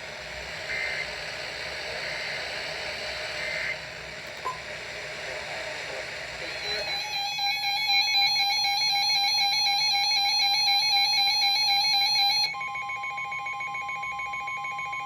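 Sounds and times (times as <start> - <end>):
steady warning tone: 6.0 - 15.0
two-tone attention alarm: 6.4 - 15.0.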